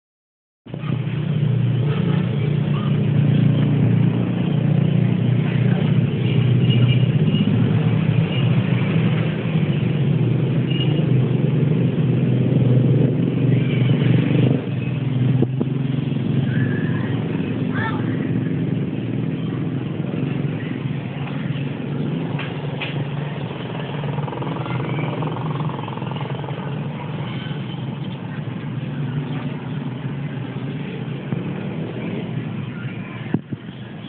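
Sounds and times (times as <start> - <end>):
low rumbling drone: 11.2 - 32.6.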